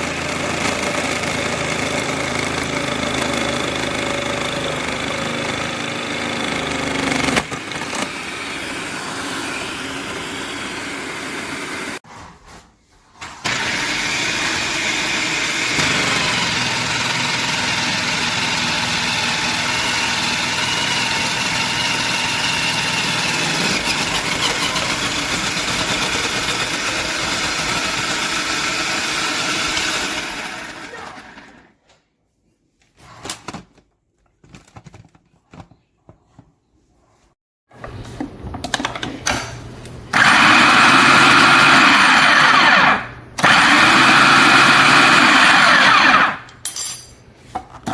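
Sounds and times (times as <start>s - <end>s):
food processor motor whining: 0.0s - 12.0s, 13.4s - 31.7s, 40.1s - 46.6s.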